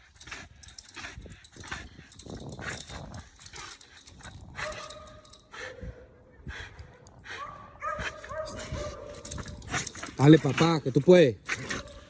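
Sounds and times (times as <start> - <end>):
dog scuffling and tugging: 8.0 - 12.0.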